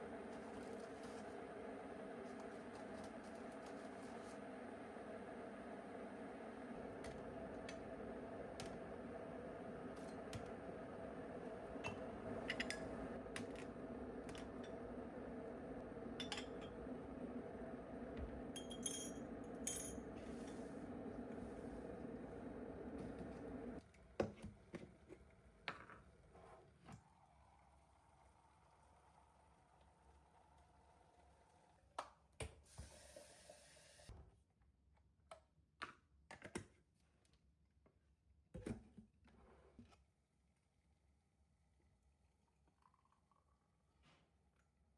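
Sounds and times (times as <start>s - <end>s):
steady low hum: 0.0s - 23.8s.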